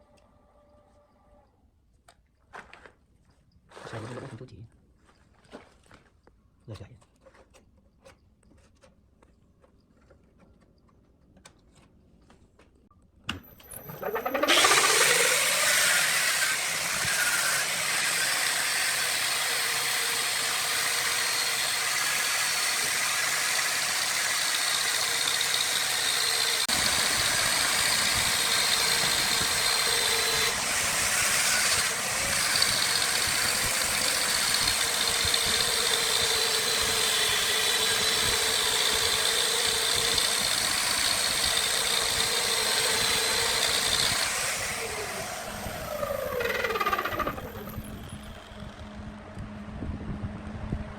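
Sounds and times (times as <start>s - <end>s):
electric lathe motor whining: 13.7s - 49.6s.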